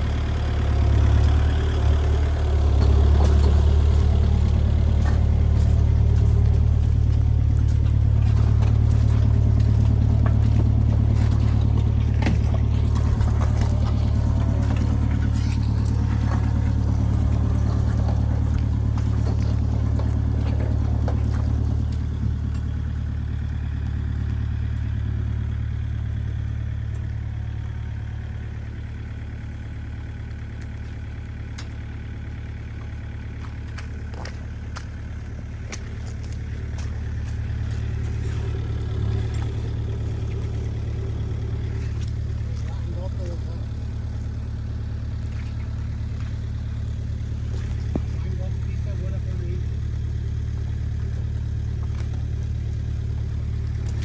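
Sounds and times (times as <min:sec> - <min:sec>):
heavy engine running: 0:00.0 - 0:54.0
clatter and knocks: 0:01.8 - 0:22.8.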